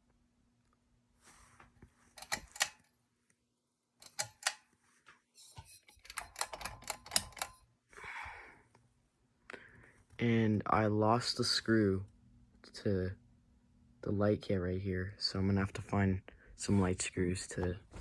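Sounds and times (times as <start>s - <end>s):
ceiling fan parts clicking: 2.2s - 2.9s, 4.0s - 4.7s, 5.6s - 7.6s.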